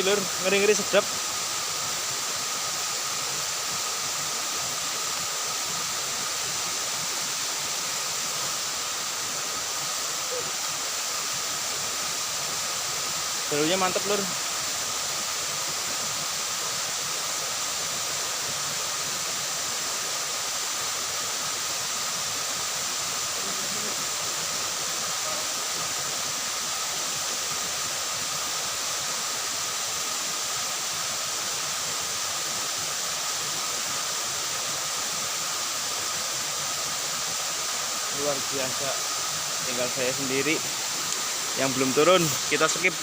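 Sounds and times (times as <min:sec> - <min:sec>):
water rushing: 0:00.0 - 0:43.0
thin steady high tones: 0:01.9 - 0:18.7, 0:21.4 - 0:28.2, 0:34.5 - 0:43.0.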